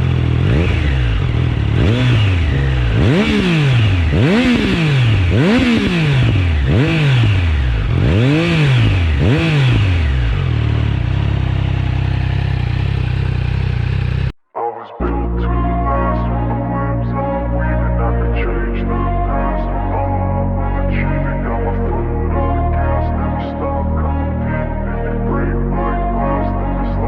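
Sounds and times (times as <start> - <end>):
motorcycle engine idling and revving: 0.0 - 14.4.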